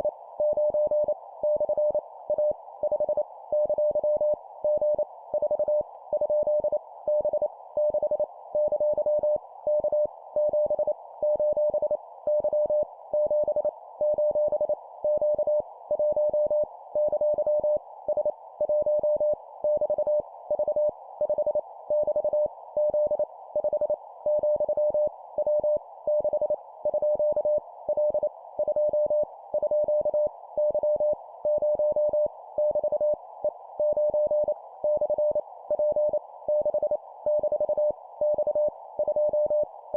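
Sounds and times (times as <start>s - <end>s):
morse code beeps: 33.8s - 39.6s.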